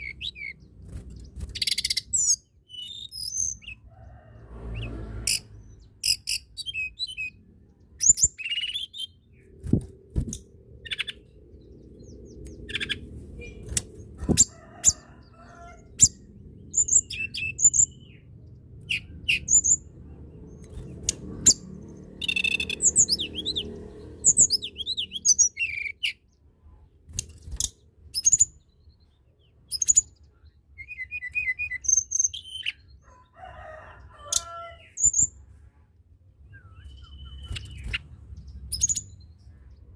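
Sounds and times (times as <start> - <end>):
songbird chirping and trilling: 0.0 - 39.9.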